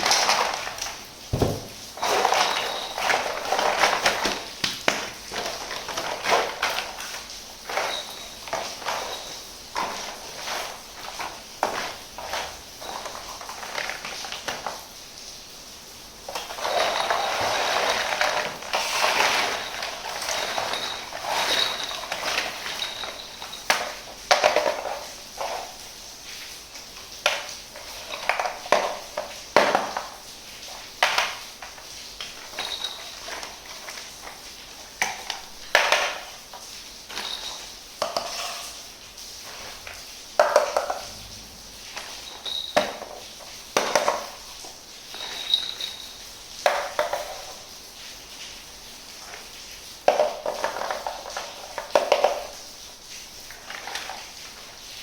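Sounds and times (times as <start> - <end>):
packaging rustling and crinkling: 0.0 - 14.8
toy kitchen pieces clattering: 0.0 - 14.9, 16.2 - 25.8, 27.2 - 30.2, 31.0 - 36.4, 37.1 - 38.8, 42.0 - 44.4, 45.1 - 47.6, 50.1 - 52.6, 53.5 - 54.3.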